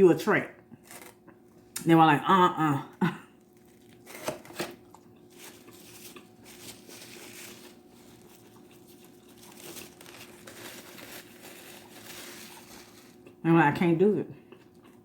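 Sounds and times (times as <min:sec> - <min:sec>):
faint steady hum: 0:00.0 - 0:15.0
paper wrapper crinkling: 0:03.4 - 0:13.4
chewing: 0:04.8 - 0:06.8, 0:07.9 - 0:10.5.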